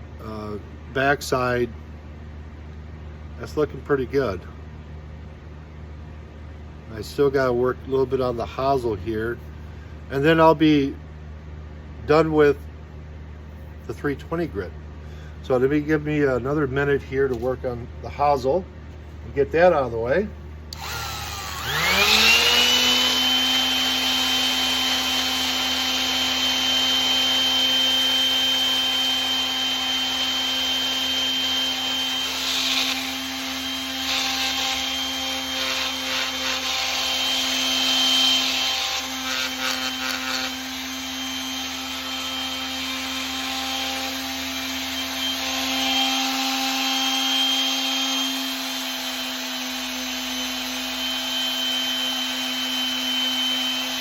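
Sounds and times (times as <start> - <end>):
electric sander running: 20.7 - 54.0.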